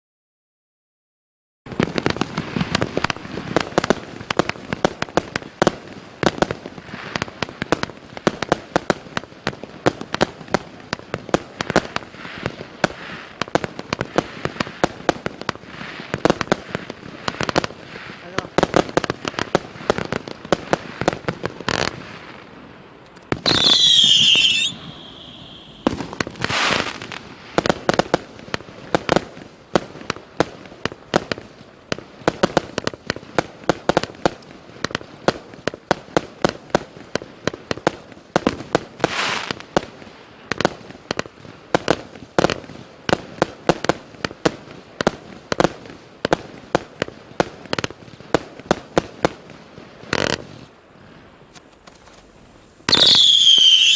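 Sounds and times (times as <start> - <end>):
firework launch bangs and bursts: 1.7 - 22.6, 23.2 - 51.2, 52.8 - 53.9
hissing crackle bursts: 1.7 - 53.9
firework whistling screech: 23.2 - 27.2, 39.0 - 39.6, 52.2 - 53.9.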